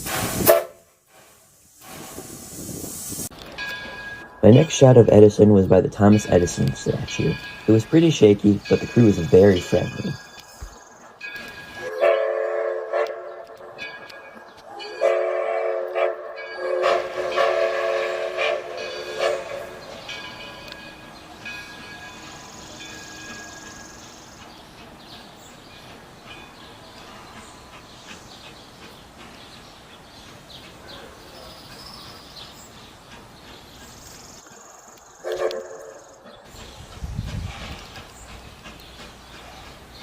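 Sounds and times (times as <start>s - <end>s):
steam locomotive whistle: 0.0s - 0.9s, 11.8s - 13.6s, 14.8s - 19.8s, 35.2s - 36.0s
train running: 0.0s - 40.0s.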